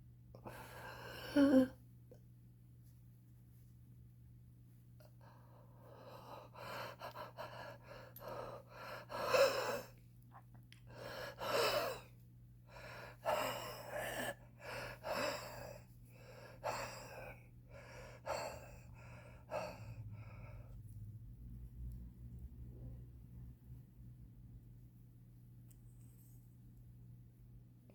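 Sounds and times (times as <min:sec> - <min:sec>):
labored wheezing breaths: 0:05.2 - 0:10.0, 0:10.9 - 0:12.1, 0:12.7 - 0:20.9.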